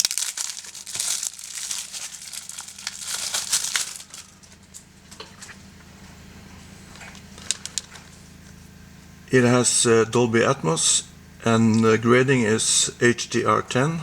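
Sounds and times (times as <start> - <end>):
plastic wrapping crinkling: 0.0 - 4.9, 6.9 - 8.2
faint handling clicks: 6.9 - 8.1.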